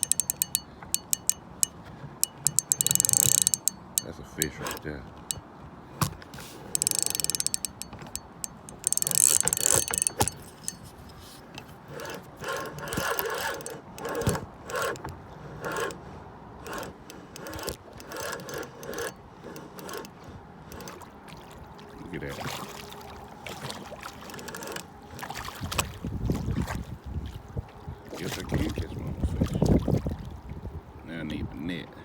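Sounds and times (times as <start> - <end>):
fishing reel clicking: 0.0 - 5.4, 6.6 - 15.0, 15.6 - 16.0, 16.6 - 21.0, 24.3 - 24.9.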